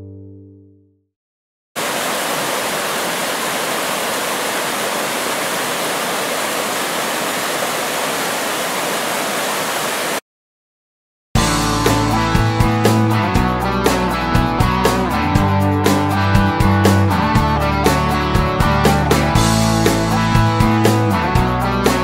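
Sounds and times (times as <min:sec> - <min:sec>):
steady rushing noise: 0:01.8 - 0:10.2
rock guitar music: 0:11.4 - 0:22.0.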